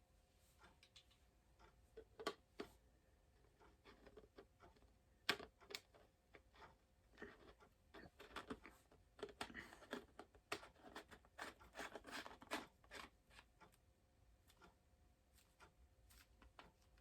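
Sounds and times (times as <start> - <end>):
plastic parts clicking and rustling: 3.4 - 13.5.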